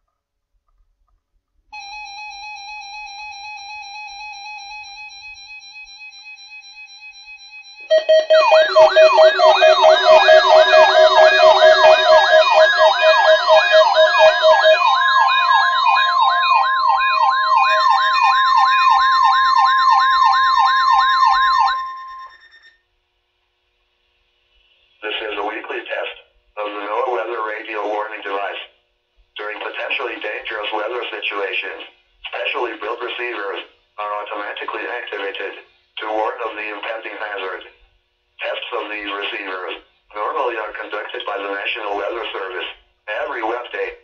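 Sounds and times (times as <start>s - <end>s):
siren-like electronic wails: 7.8s - 22.6s
steady electronic tone: 7.9s - 18.0s
steady high tone: 7.9s - 19.1s.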